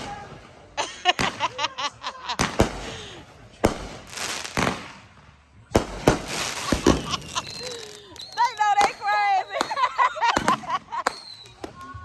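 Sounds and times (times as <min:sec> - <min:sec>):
crackling hiss: 0:00.0 - 0:11.9
fireworks banging: 0:00.0 - 0:12.0.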